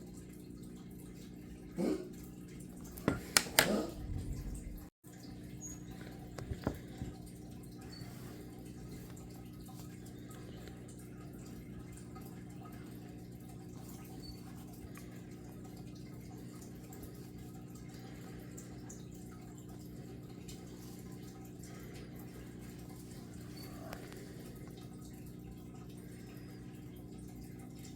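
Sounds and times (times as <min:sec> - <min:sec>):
low hum: 0:03.6 - 0:04.9.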